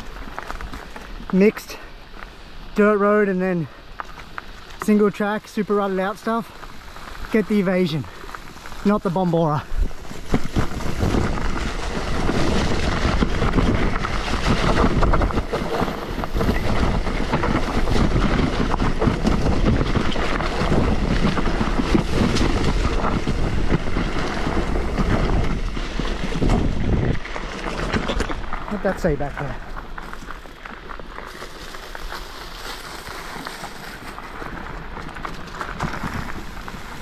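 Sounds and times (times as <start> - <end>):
bicycle rattling over rough ground: 0.0 - 37.0
wind buffeting microphone: 5.6 - 30.9.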